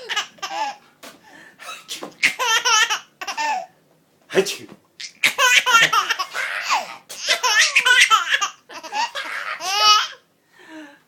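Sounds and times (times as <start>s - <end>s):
small child giggling: 5.4s - 10.2s.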